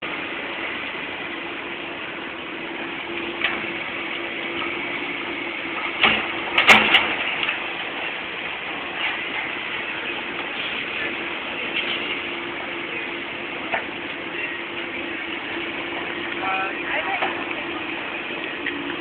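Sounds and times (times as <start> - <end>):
heavy machinery droning: 0.0 - 19.0
demolition clatter: 5.9 - 12.3
sharp knocks and bangs: 6.0 - 7.3.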